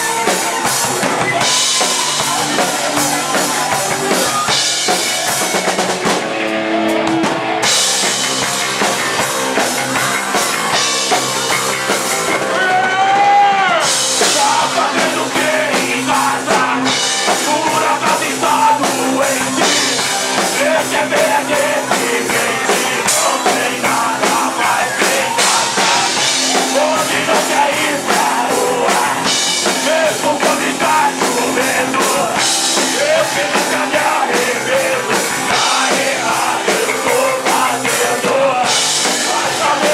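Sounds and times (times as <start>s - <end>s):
drum kit beat: 0.0s - 39.9s
rock band playing: 0.0s - 39.9s
person singing: 12.5s - 39.9s.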